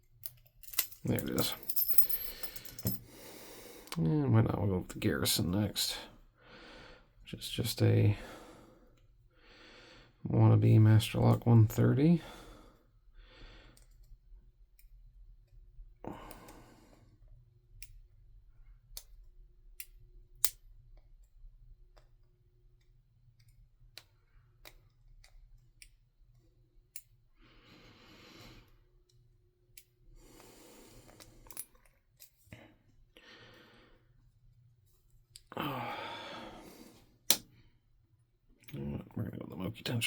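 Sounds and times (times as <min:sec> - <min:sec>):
heavy breaths through nose: 0:02.0 - 0:04.0, 0:27.4 - 0:28.8, 0:30.2 - 0:31.6, 0:35.6 - 0:37.2.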